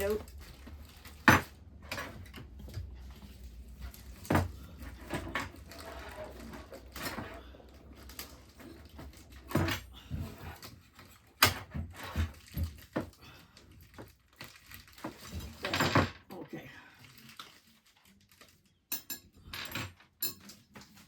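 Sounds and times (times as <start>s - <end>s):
low steady hum: 0.0s - 11.2s
objects knocking and bumping: 0.0s - 16.3s.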